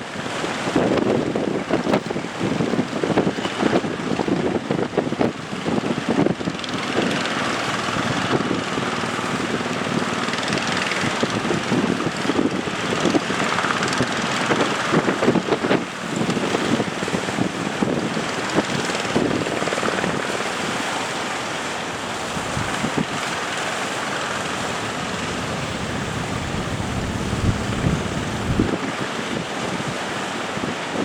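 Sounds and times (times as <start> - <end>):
boat engine running: 0.0 - 31.0
rush of waves: 0.0 - 31.0
wind buffeting microphone: 0.0 - 31.0.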